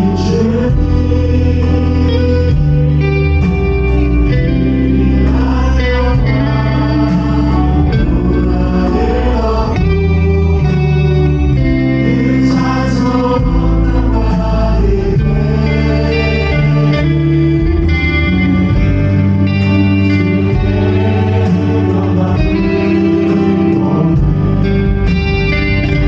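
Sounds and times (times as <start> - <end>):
voices singing a praise song: 0.0 - 3.2, 4.6 - 26.0
guitar and band playing: 0.0 - 26.0
strong bass line: 0.0 - 26.0.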